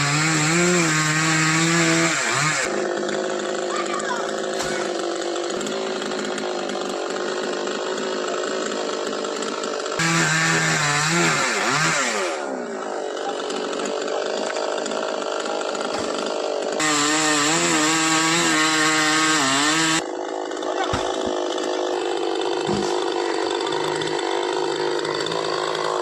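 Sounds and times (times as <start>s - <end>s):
chainsaw engine running: 0.0s - 26.0s.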